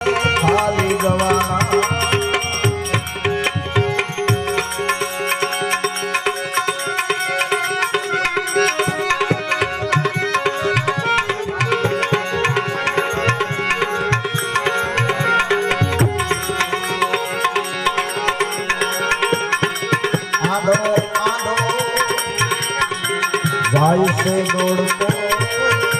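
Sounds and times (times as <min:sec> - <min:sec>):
tabla rhythm: 0:00.0 - 0:25.9.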